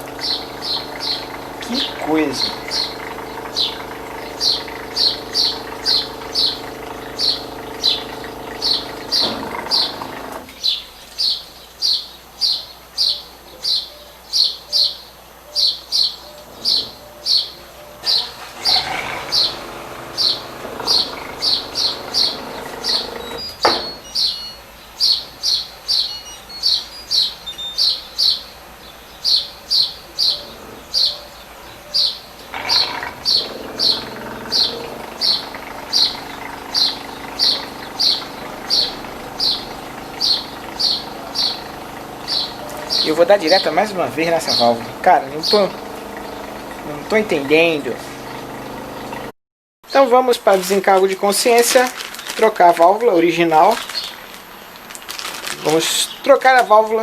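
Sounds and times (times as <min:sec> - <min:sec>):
washing machine water inlet hum: 0:00.0 - 0:10.6, 0:18.0 - 0:24.0, 0:32.5 - 0:49.3
small bird chirping: 0:00.0 - 0:48.4, 0:50.7 - 0:57.0.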